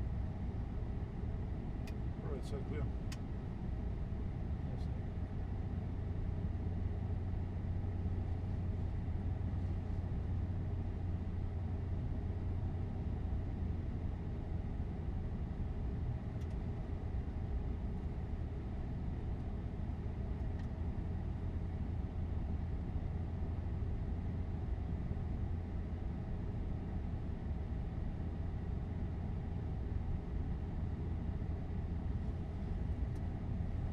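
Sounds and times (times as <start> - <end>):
aircraft engines idling hum: 0.0 - 33.9.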